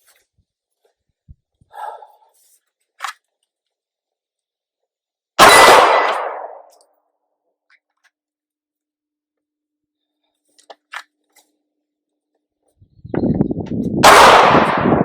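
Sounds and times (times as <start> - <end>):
pistol shot echoing: 5.4 - 6.7, 14.0 - 15.0.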